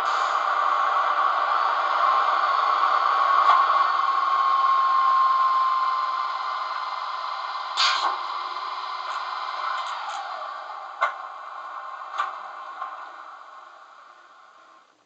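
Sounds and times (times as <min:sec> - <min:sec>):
model locomotive running noise: 0:00.0 - 0:14.9
short sharp hiss: 0:07.8 - 0:08.2.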